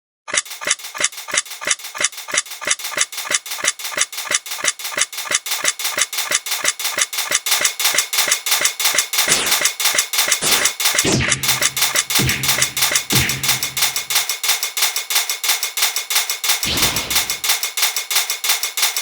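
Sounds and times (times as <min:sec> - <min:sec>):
rushing noise: 0:16.7 - 0:17.5.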